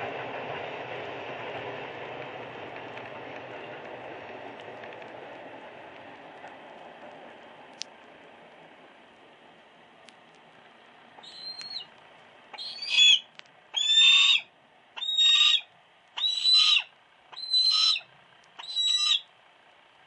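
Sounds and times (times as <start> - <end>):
hawk calling: 11.2 - 11.9, 12.6 - 19.3.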